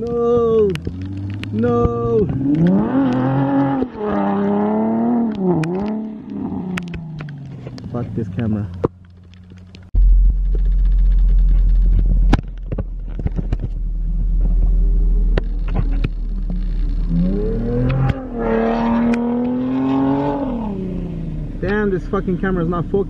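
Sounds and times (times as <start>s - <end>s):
car engine revving hard: 2.3s - 6.7s, 17.0s - 21.6s
loud low rumble: 9.7s - 23.0s.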